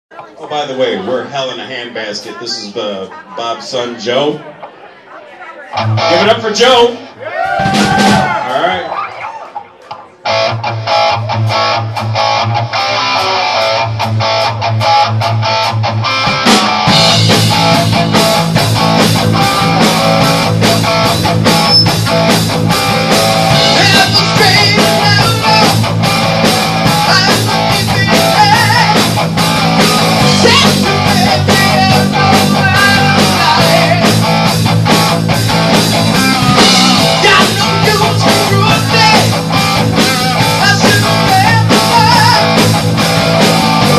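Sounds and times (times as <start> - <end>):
live rock band playing: 5.6 - 43.9
electric guitar riff: 5.7 - 8.4, 10.2 - 43.9
low bass notes: 5.8 - 6.6, 10.3 - 43.9.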